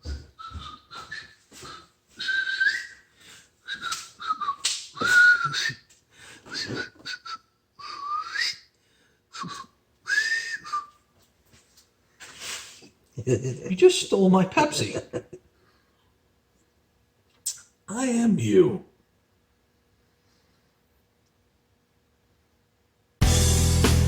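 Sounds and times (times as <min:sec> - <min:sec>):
high whistling squeals: 0:00.4 - 0:05.9, 0:06.5 - 0:08.7.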